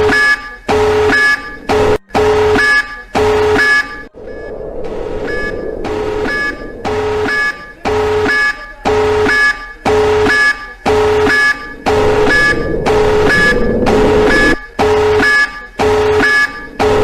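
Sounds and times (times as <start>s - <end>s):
two-tone electronic alarm: 0.0s - 17.0s.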